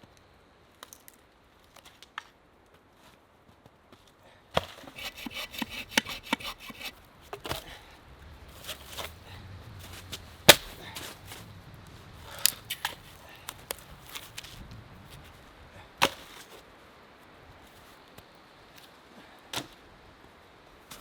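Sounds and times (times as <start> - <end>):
axe chopping firewood: 4.5 - 7.9, 10.0 - 11.4, 12.3 - 14.6, 16.0 - 16.6, 19.5 - 19.8.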